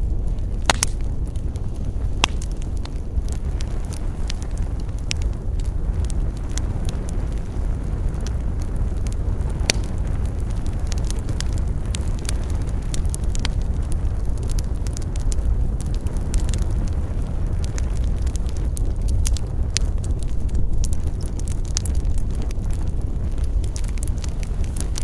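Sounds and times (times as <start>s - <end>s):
steady low rumble: 0.0s - 25.0s
wood fire crackling and popping: 0.0s - 25.0s.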